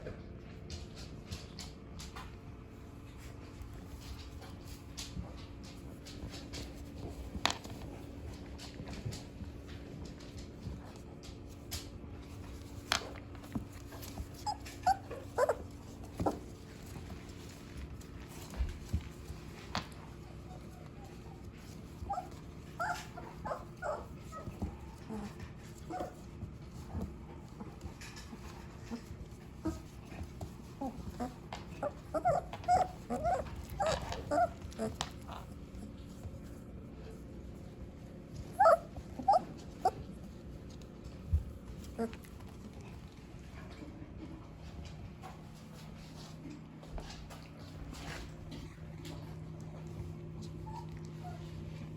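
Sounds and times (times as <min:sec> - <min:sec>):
puppies whimpering: 0:14.2 - 0:16.6, 0:22.0 - 0:25.3, 0:30.8 - 0:35.9, 0:38.4 - 0:40.1.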